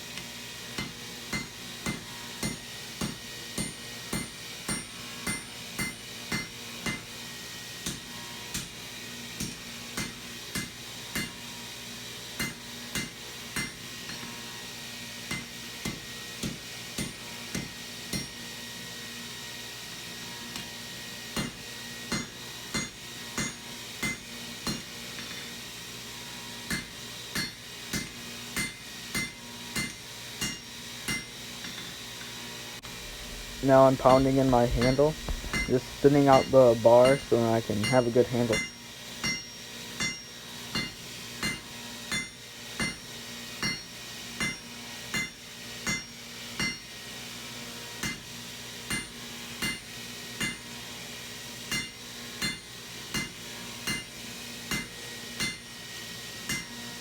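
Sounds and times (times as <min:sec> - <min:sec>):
hammer striking steel on anvil: 0:00.8 - 0:07.0, 0:32.9 - 0:40.2, 0:40.8 - 0:43.0.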